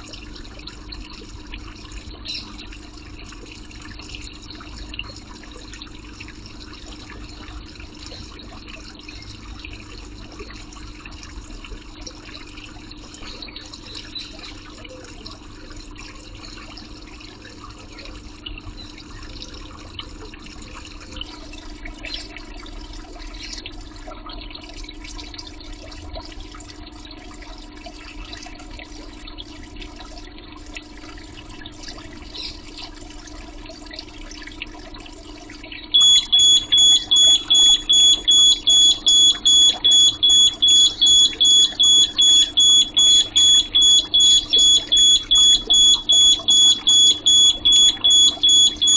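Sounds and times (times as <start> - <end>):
steady hum: 0.0 - 48.9.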